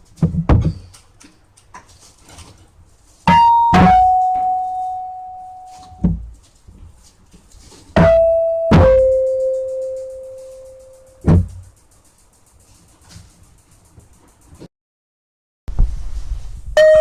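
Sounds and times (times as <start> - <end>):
keyboard ding-dong chime: 3.3 - 6.0, 8.0 - 11.2, 16.8 - 17.0.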